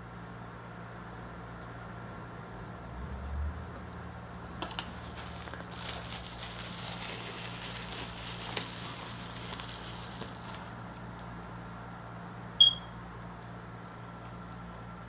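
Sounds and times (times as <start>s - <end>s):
low electrical hum: 0.0s - 15.0s
plastic packaging crackling: 4.5s - 11.3s.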